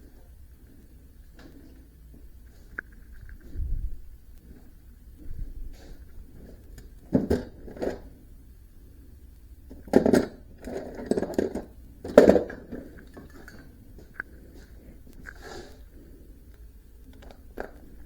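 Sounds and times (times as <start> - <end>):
hard objects knocking and clattering: 9.7 - 13.6.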